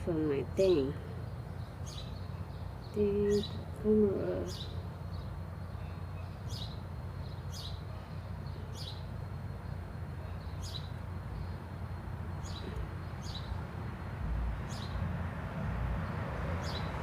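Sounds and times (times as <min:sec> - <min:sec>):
small bird chirping: 0:00.6 - 0:13.7.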